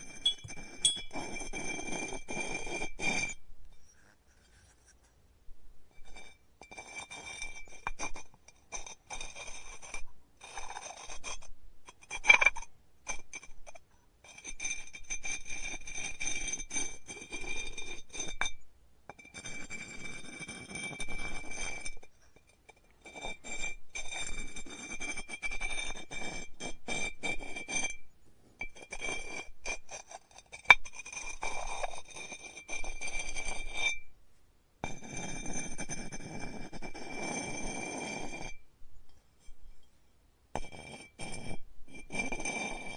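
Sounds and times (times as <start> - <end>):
pottery tools scraping clay: 0.0 - 5.1, 6.1 - 13.2, 28.7 - 33.8, 34.8 - 38.6, 40.6 - 42.9
sharp clinks: 0.2 - 1.3
thin high ringing tone: 0.2 - 1.4.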